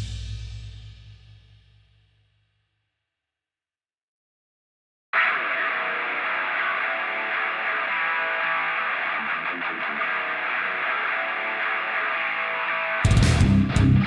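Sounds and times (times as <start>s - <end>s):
guitar instrumental music: 5.2s - 14.0s.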